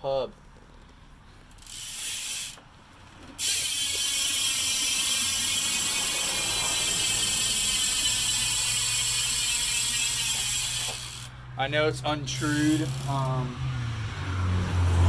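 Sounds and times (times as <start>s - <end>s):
bike hub ratcheting buzz: 1.4s - 2.7s, 3.3s - 11.4s, 12.3s - 13.4s.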